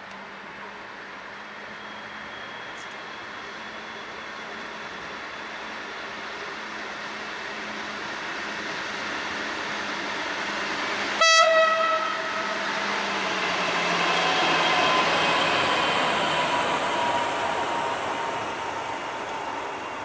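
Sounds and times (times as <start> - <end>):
railcar running noise: 0.0 - 20.0
faint high whine: 1.2 - 7.0
train horn toot: 11.2 - 12.7.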